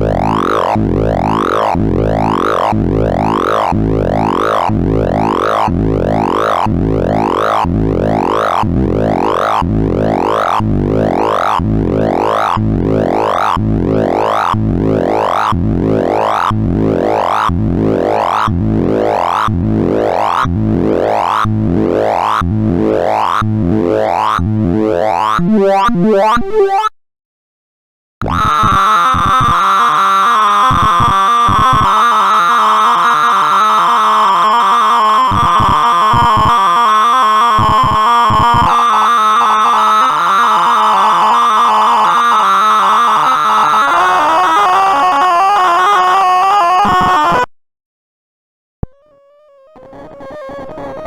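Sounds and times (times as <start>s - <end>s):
synthesized sweeping beeps: 25.4s - 26.9s.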